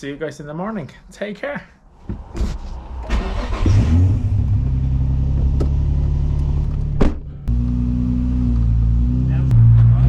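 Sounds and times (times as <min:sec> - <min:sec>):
car engine running: 0:03.4 - 0:10.0.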